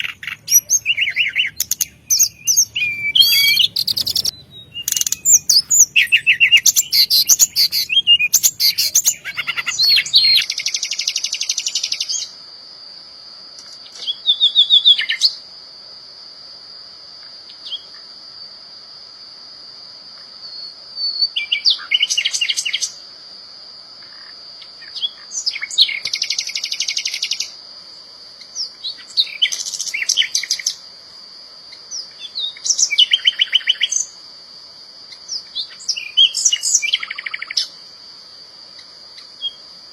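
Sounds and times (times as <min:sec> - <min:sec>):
songbirds trilling: 0:00.0 - 0:12.2.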